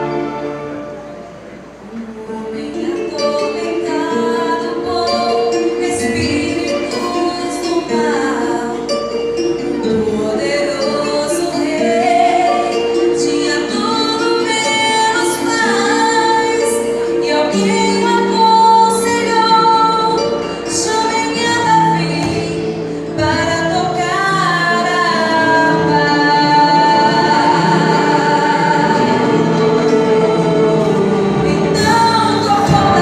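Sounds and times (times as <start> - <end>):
orchestra playing a hymn: 0.0 - 33.0
woman singing: 2.1 - 33.0.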